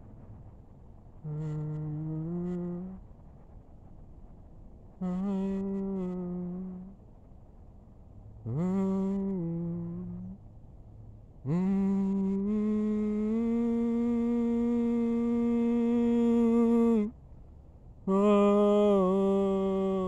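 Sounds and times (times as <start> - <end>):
person humming long notes: 1.2 - 3.0, 5.0 - 7.0, 8.4 - 10.4, 11.4 - 17.2, 18.1 - 20.0.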